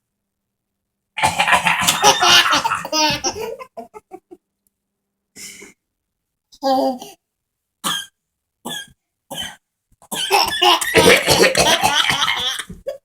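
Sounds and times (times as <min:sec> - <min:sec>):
baby laughing: 0:01.2 - 0:04.2, 0:10.1 - 0:13.0
man fake coughing: 0:08.7 - 0:12.8.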